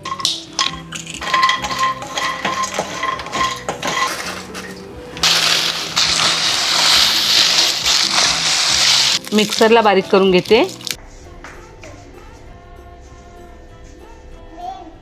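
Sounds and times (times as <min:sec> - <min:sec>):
dry spices clicking and clinking: 0:00.0 - 0:11.0
electric grinder grinding spices: 0:05.2 - 0:11.0.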